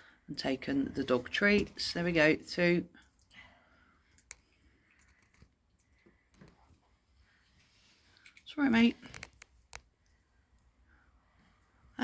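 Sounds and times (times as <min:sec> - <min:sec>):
faint soft sounds: 0:03.0 - 0:12.0.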